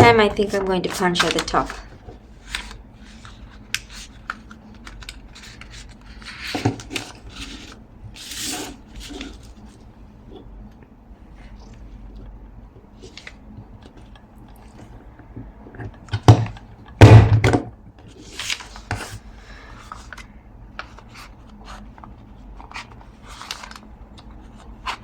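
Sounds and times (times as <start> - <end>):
paper rustling: 0.4 - 9.8, 18.1 - 25.0.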